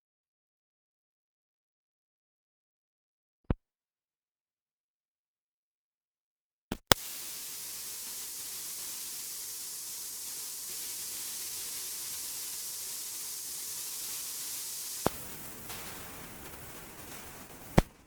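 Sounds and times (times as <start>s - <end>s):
electrical hiss: 6.9s - 18.0s.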